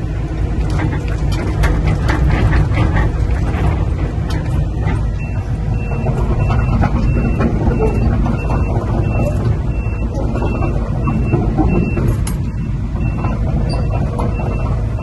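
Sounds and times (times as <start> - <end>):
excavator diesel engine running: 0.0 - 15.0
travel alarm beeping: 5.2 - 15.0.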